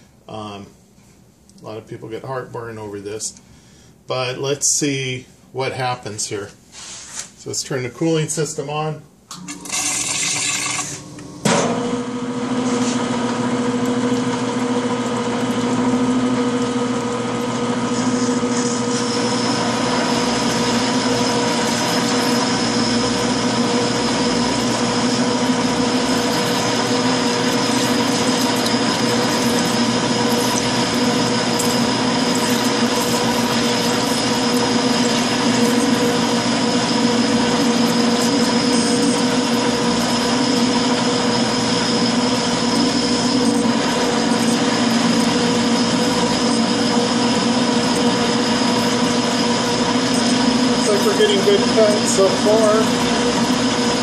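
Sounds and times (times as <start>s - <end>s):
lathe drone with whining gears: 13.3s - 54.0s
coolant hiss: 42.0s - 54.0s.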